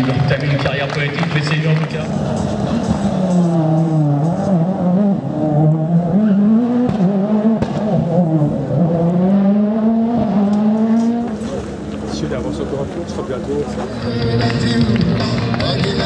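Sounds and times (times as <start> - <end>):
rally car engine revving hard: 1.1 - 11.9.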